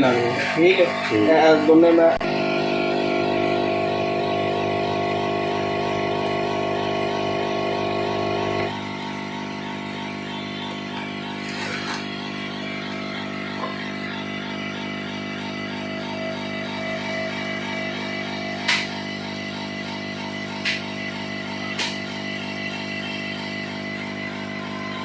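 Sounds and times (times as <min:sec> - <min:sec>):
droning background music: 0:08.8 - 0:25.0.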